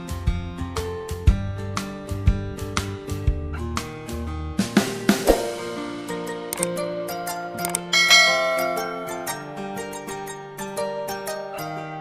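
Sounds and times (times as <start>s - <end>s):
guitar and bass music: 0.0s - 12.0s
drum beat: 5.2s - 5.9s.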